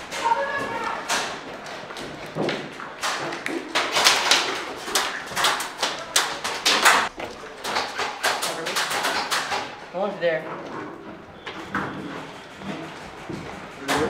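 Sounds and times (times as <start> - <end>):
airsoft guns firing: 3.0 - 9.8.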